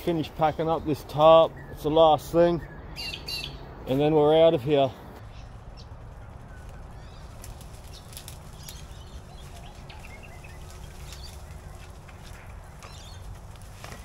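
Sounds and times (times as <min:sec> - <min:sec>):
steady low rumble: 0:05.2 - 0:13.8
tarp fabric rustling: 0:06.3 - 0:14.0.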